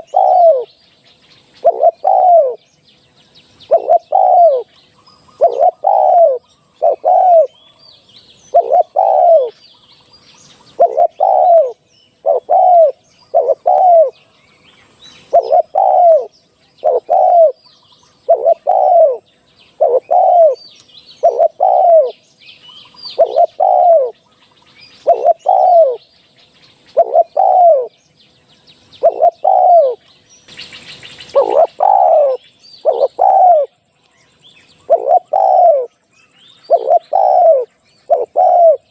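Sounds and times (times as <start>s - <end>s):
dove cooing: 0.0s - 0.8s, 1.6s - 2.6s, 3.6s - 7.8s, 8.4s - 9.6s, 10.6s - 14.2s, 15.2s - 17.6s, 18.2s - 20.6s, 21.2s - 22.2s, 22.8s - 24.2s, 25.0s - 26.0s, 26.9s - 27.9s, 29.0s - 30.0s, 31.3s - 33.8s, 34.8s - 35.9s, 36.6s - 38.9s
faint small bird chirps: 0.0s - 38.9s.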